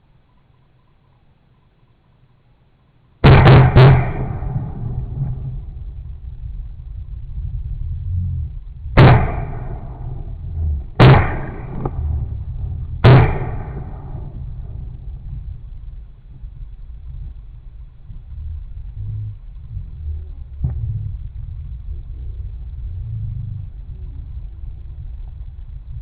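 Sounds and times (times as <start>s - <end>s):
low wind rumble: 0.0s - 26.0s
shotgun shots with echo: 3.2s - 5.9s, 9.0s - 15.6s.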